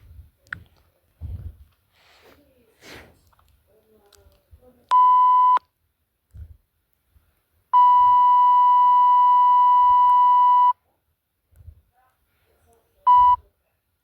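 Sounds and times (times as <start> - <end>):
long beep: 7.8 - 10.8
short beep: 7.8 - 10.8.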